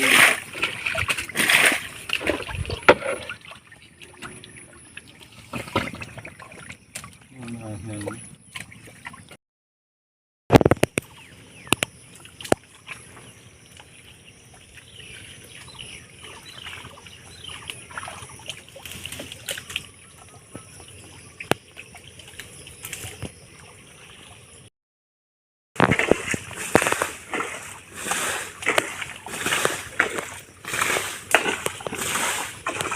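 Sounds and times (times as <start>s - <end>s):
water sloshing and splashing: 0.0s - 9.4s, 10.6s - 24.7s, 25.8s - 32.9s
faint water trickle: 3.1s - 9.2s, 11.1s - 24.6s.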